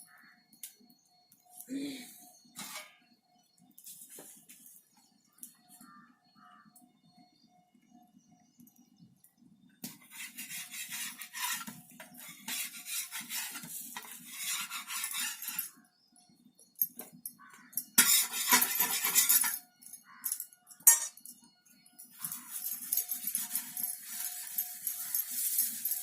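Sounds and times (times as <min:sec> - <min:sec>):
dishes and utensils clinking: 0:02.6 - 0:03.0, 0:10.2 - 0:15.7, 0:16.8 - 0:21.4, 0:22.0 - 0:26.0.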